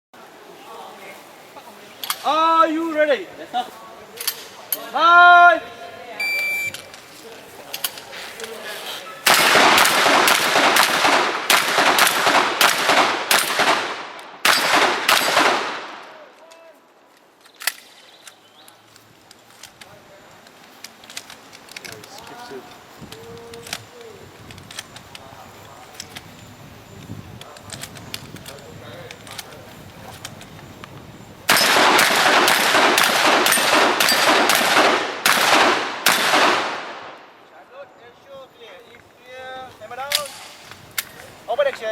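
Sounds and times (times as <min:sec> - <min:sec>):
shotgun shots: 0:09.2 - 0:16.2, 0:31.5 - 0:37.3.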